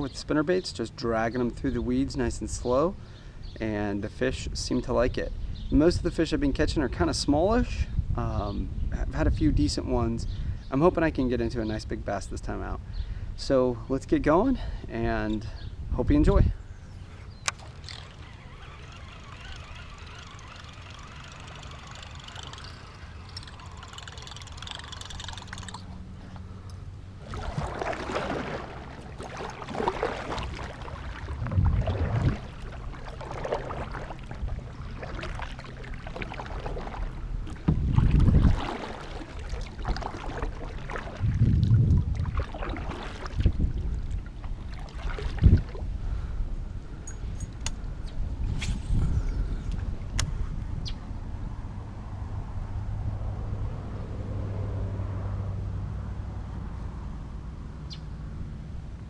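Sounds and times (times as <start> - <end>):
kayak paddle splashing: 17.0 - 26.5, 27.1 - 46.2.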